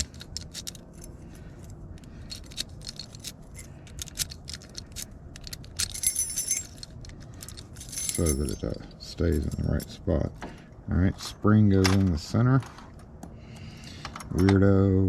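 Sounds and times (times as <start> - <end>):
key ring jangling: 0.0 - 10.0
metal lock parts clicking: 0.0 - 10.0.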